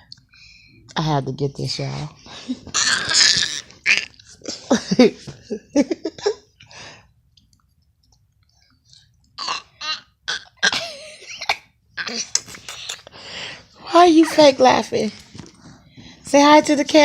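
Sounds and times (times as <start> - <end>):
baby fake coughing: 9.4 - 12.4.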